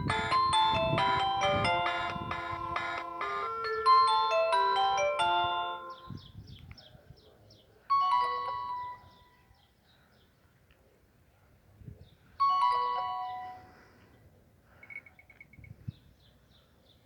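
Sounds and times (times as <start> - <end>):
electronic ringtone melody: 0.0 - 6.2, 7.9 - 9.2, 12.4 - 13.8
short phone chime: 0.0 - 6.2.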